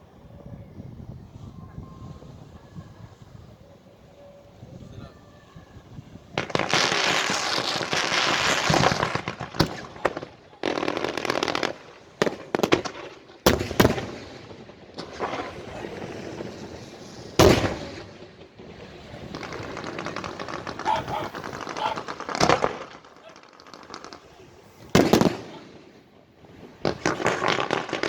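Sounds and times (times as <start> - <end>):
fireworks hissing and crackling: 0.0 - 28.0
firework cracks: 5.9 - 28.0
loud firework bangs: 6.0 - 28.0.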